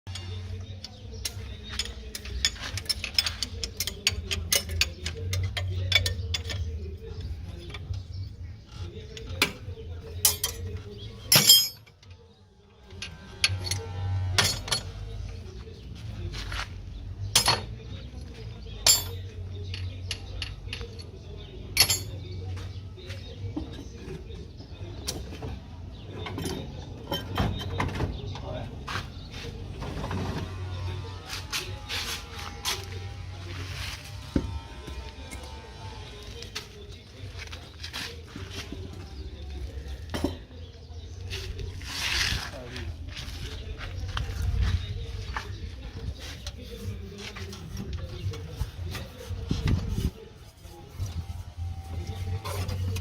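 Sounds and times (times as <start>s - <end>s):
metallic clicks and knocks of tools: 0.1s - 6.6s
hand tools clinking on metal: 0.1s - 6.8s, 9.2s - 12.2s, 12.9s - 15.2s, 17.2s - 22.7s.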